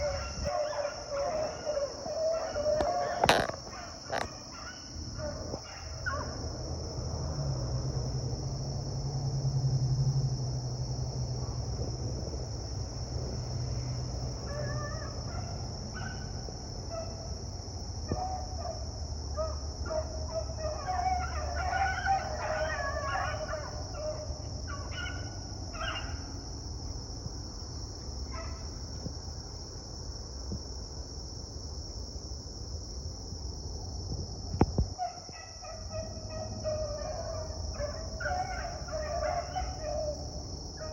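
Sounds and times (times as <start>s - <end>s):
hounds baying: 0.0s - 6.4s, 19.4s - 26.2s, 35.0s - 40.9s.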